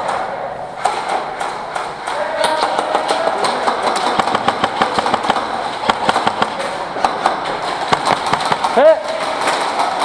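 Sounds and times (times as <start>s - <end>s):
airsoft guns firing: 3.1s - 10.0s.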